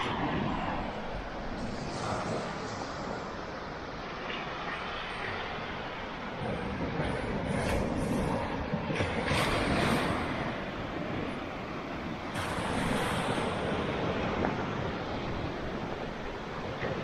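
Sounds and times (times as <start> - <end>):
ocean surf breaking: 0.0 - 17.0
wind buffeting microphone: 4.3 - 17.0.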